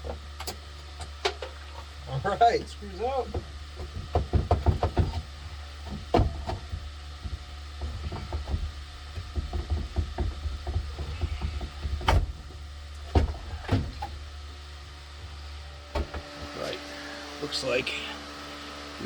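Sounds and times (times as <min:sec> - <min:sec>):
steady low hum: 0:00.0 - 0:19.0
sharp knocks: 0:03.3 - 0:05.2, 0:05.8 - 0:14.1.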